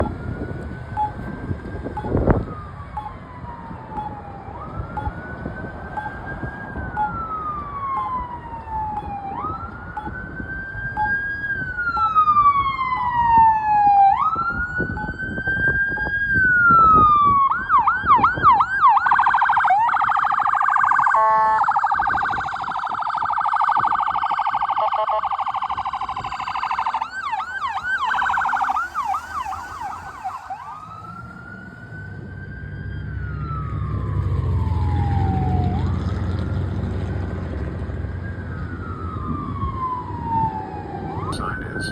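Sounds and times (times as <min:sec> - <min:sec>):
emergency vehicle siren: 0:00.0 - 0:41.9
low vehicle rumble: 0:25.3 - 0:41.6.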